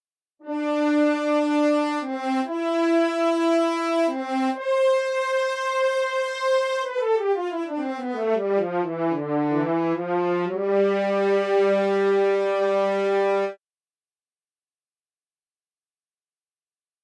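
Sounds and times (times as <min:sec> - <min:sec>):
sampled brass melody: 0:00.4 - 0:13.6.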